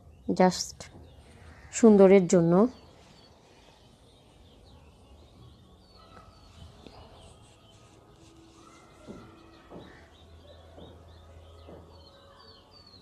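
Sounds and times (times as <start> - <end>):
small birds chirping: 0.0 - 13.0
faint knocks: 8.7 - 12.6.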